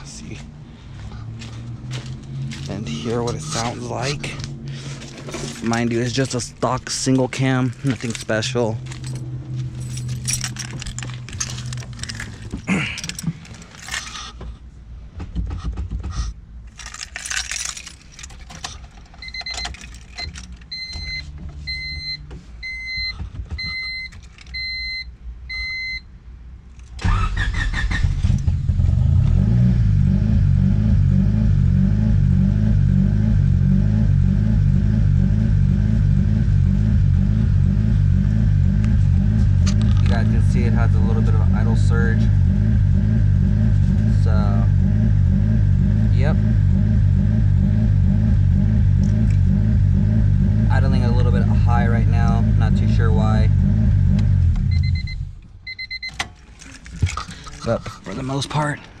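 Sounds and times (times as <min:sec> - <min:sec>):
car engine starting and idling: 0:00.0 - 0:26.0, 0:26.7 - 0:59.0
keys jingling: 0:01.4 - 0:14.4, 0:16.7 - 0:21.3, 0:23.6 - 0:24.8, 0:56.0 - 0:58.8
car warning chime beeping: 0:19.2 - 0:26.1, 0:54.7 - 0:56.3.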